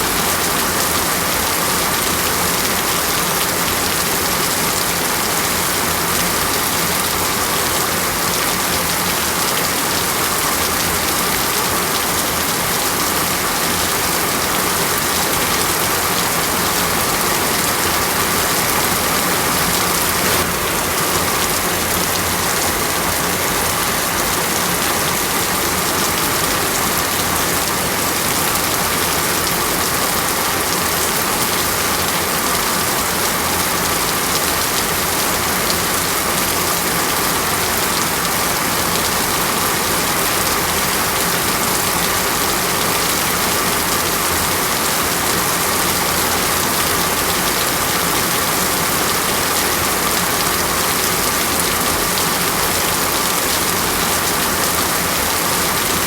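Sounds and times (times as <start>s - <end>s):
heavy rain on leaves: 0.0s - 56.0s.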